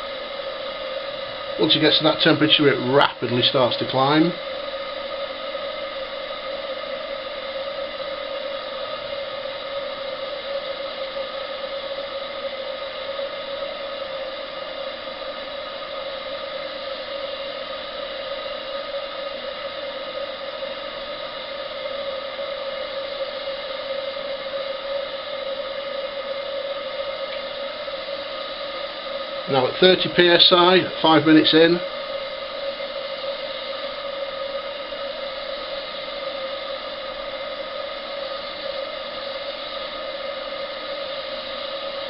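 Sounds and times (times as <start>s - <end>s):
gas burner roaring: 0.0s - 42.0s.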